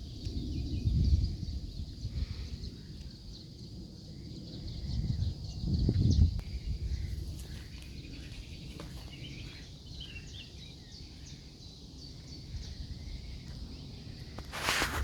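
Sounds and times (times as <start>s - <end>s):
small birds chirping: 0.0s - 15.0s
loud rustling crunch: 14.3s - 15.0s.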